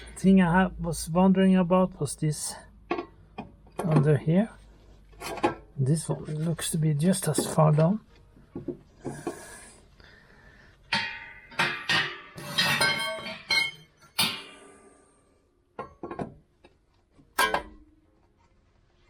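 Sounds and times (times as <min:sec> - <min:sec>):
metal clinking and knocking: 0:10.9 - 0:14.6.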